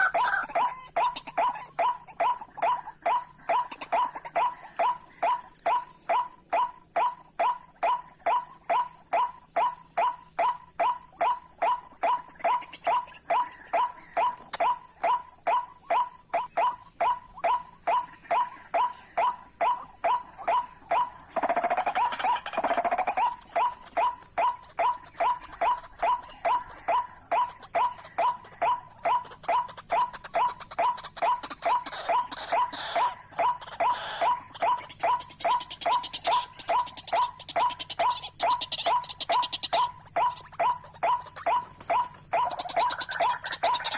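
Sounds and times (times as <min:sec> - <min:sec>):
harsh low bird calls: 0:00.0 - 0:43.9
waterhen calling: 0:00.0 - 0:43.9.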